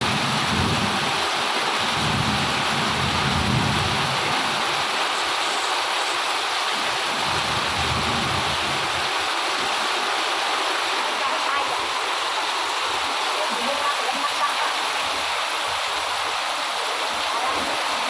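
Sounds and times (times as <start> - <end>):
wind gusts rumbling: 0.0 - 1.2, 1.8 - 4.9, 6.8 - 9.8
heavy rain falling: 0.0 - 18.0.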